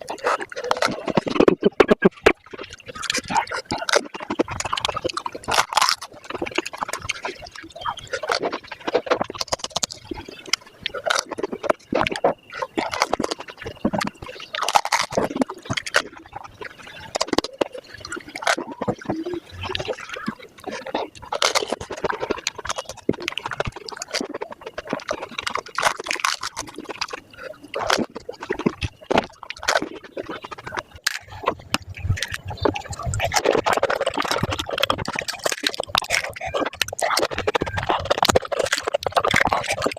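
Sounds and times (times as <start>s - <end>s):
wet slurping: 0.0s - 39.9s
crisp shells crunching: 3.7s - 6.9s, 12.8s - 16.1s, 20.7s - 27.2s, 33.3s - 39.9s.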